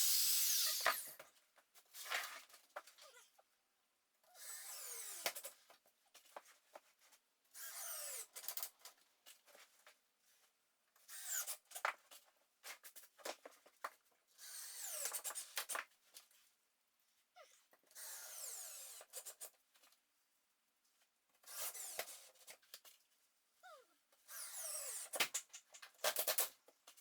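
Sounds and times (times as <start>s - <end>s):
power drill running: 0.0s - 1.1s.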